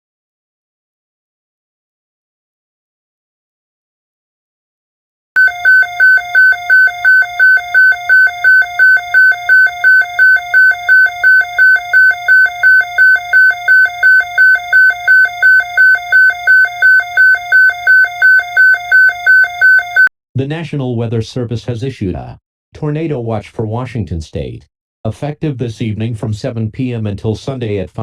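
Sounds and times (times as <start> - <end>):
short high alert beeps: 5.4 - 20.1.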